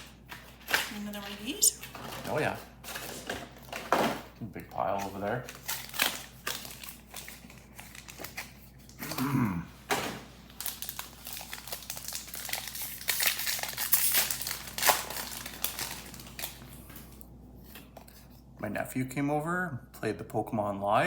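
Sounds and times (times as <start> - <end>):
foil wrappers crinkling: 0.0 - 4.0, 4.8 - 9.2, 10.4 - 17.2.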